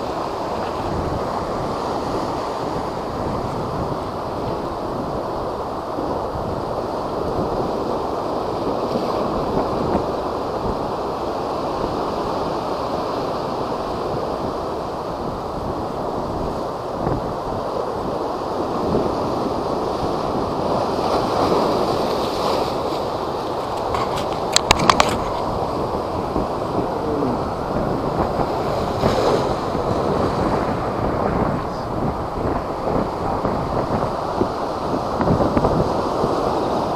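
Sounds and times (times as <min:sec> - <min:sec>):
heavy waves breaking: 0:00.0 - 0:36.9
wind buffeting microphone: 0:00.0 - 0:36.9.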